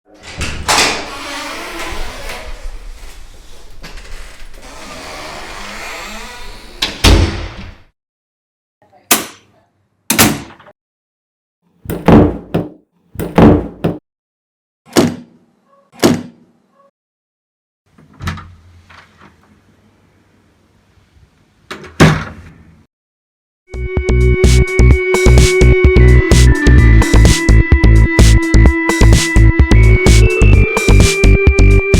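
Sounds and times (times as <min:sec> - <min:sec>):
door shutting with thuds: 0:06.8 - 0:07.8, 0:11.9 - 0:14.0.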